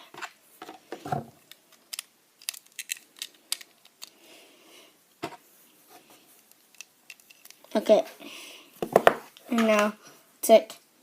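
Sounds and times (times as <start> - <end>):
plastic bricks clicking: 1.4 - 4.2.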